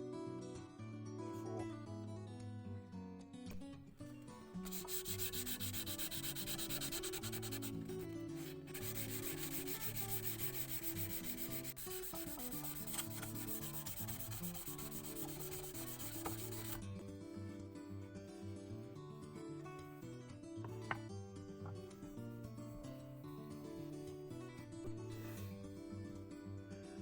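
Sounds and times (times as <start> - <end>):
soft guitar music: 0.0 - 27.0
chisel rubbing on sandpaper: 4.6 - 16.8.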